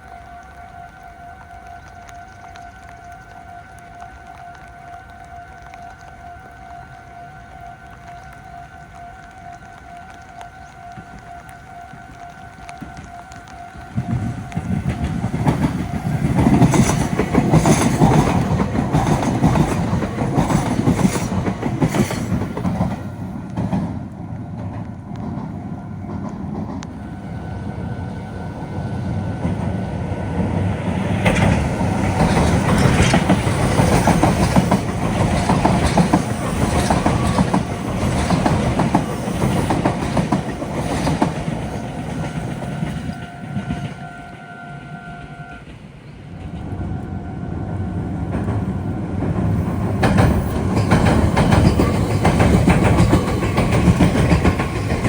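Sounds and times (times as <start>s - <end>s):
level crossing warning bell: 0.0s - 23.4s, 30.9s - 55.0s
train wheels clattering over rails: 13.9s - 28.1s, 28.8s - 44.0s, 48.2s - 55.0s.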